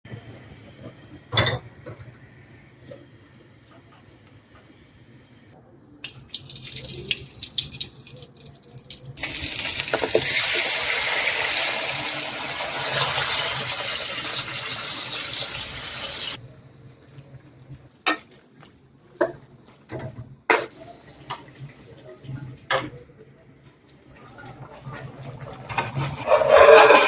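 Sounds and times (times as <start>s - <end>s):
tap water running: 6.1s - 16.4s.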